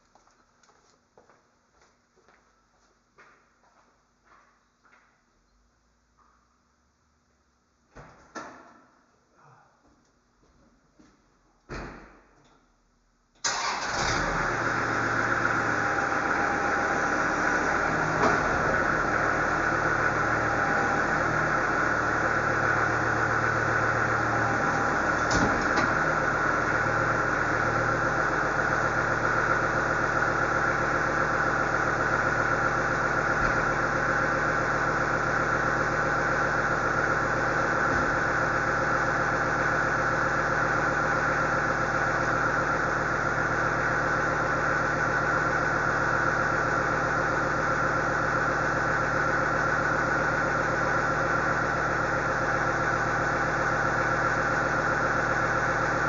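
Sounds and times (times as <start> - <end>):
loader engine running: 13.5 - 56.0
steady whine: 14.6 - 56.0.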